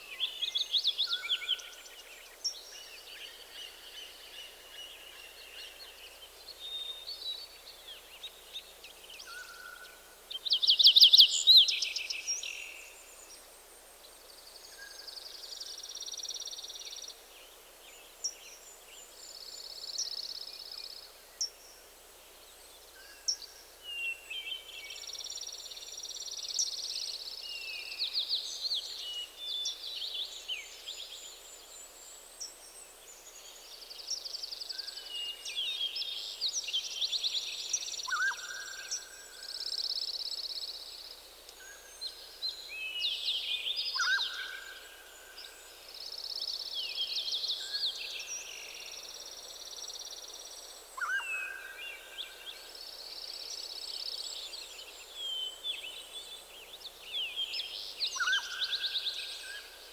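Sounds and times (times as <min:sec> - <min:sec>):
songbirds singing: 0:22.4 - 0:59.9.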